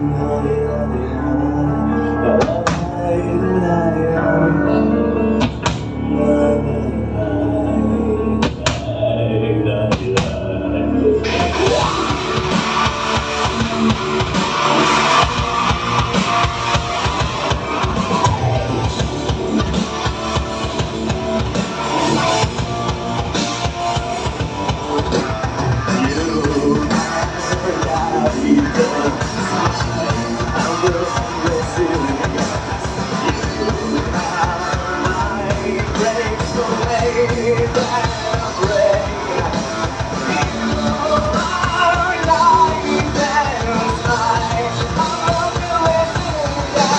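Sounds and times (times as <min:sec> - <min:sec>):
electric guitars: 0:00.0 - 0:46.9
person singing: 0:00.0 - 0:46.9
drum kit beat: 0:05.4 - 0:05.9, 0:11.3 - 0:46.9.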